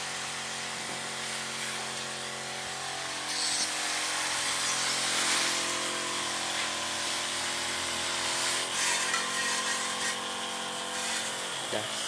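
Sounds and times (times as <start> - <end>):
sprayer pump motor hum: 0.0 - 12.0
water mist spray hiss: 1.2 - 7.5.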